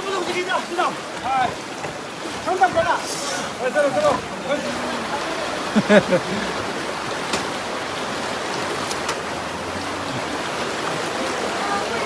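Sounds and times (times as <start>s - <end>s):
rushing floodwater: 0.0s - 12.0s.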